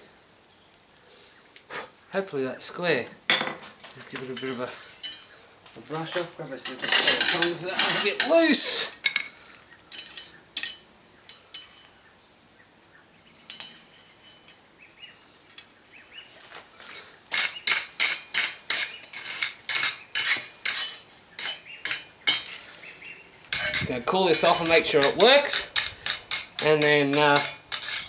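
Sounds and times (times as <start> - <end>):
wire brush scrubbing metal: 6.6 - 8.9, 17.3 - 28.0.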